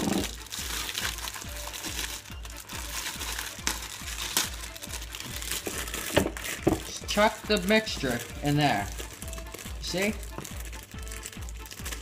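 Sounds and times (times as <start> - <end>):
background music with bass beat: 0.0 - 12.0
plastic packet crinkling: 0.0 - 12.0.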